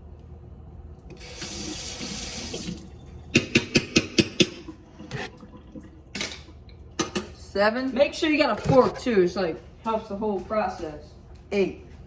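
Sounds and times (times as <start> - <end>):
running water hissing: 1.1 - 2.9.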